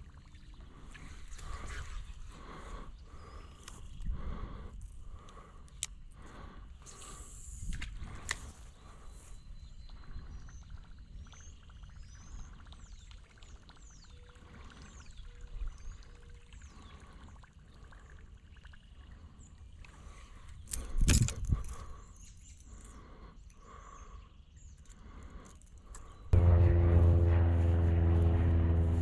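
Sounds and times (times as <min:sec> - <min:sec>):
small birds chirping: 0:00.2 - 0:07.3, 0:08.7 - 0:21.0, 0:21.6 - 0:26.4
low outdoor rumble: 0:26.3 - 0:29.0.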